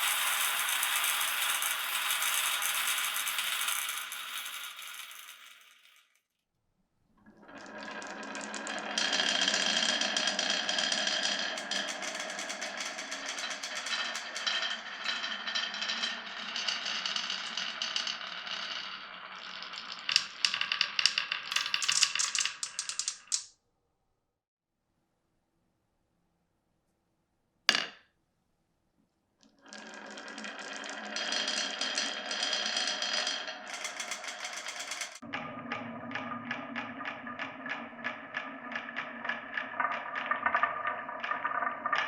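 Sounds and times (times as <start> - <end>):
marbles clattering on wooden run: 0.0 - 6.2, 7.6 - 23.5, 29.6 - 35.3.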